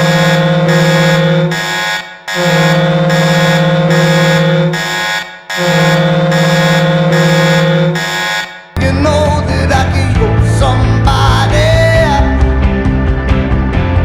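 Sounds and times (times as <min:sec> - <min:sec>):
ice hockey goal horn blasts: 0:02.4 - 0:04.8, 0:05.6 - 0:08.1.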